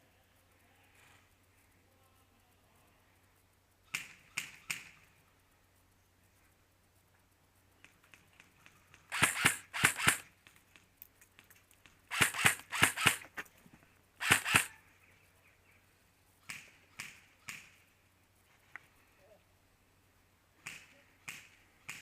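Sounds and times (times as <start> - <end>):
airsoft guns firing: 3.9 - 5.2, 7.8 - 10.6, 12.1 - 13.3, 14.2 - 14.7, 16.4 - 17.8, 20.6 - 22.0.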